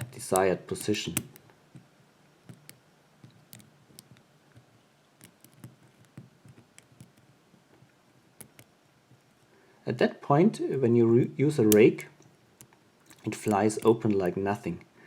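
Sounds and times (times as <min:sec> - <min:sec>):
lock pick clicking in padlock: 0:00.0 - 0:07.3, 0:08.4 - 0:08.7, 0:11.6 - 0:14.1.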